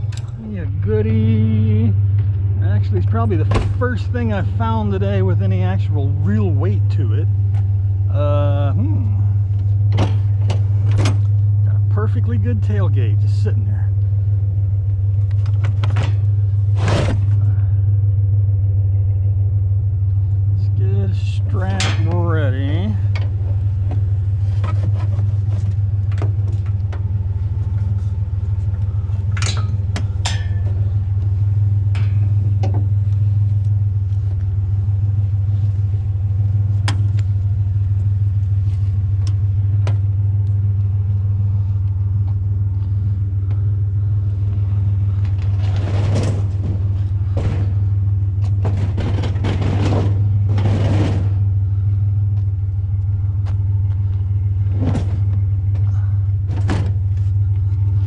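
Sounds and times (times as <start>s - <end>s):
truck engine idling: 0.0s - 58.0s
scraping and rustling: 23.0s - 39.7s, 44.4s - 52.0s.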